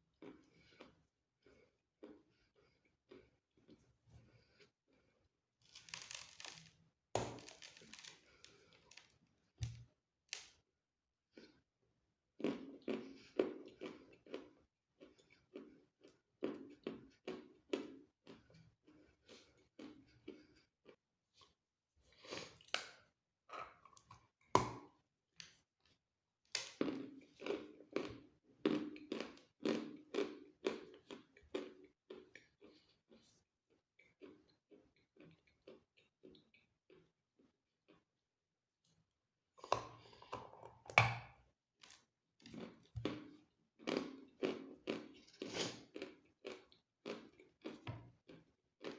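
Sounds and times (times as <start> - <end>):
crisp snack crunching: 5.6 - 9.1.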